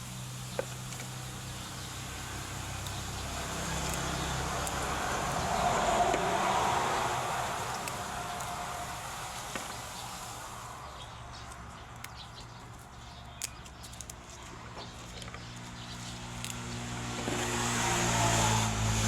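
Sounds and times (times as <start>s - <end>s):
vehicle engine passing: 1.1s - 13.2s, 13.8s - 19.0s.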